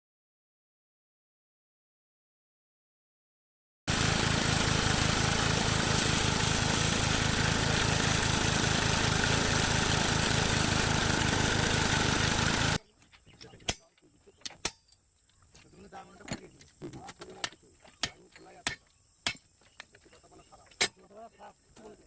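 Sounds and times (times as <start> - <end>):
small engine running: 3.9 - 12.8.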